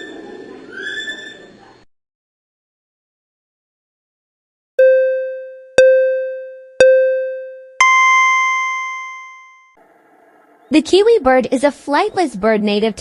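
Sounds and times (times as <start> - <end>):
short low beeps: 4.8 - 9.5
long high beep: 4.8 - 9.6.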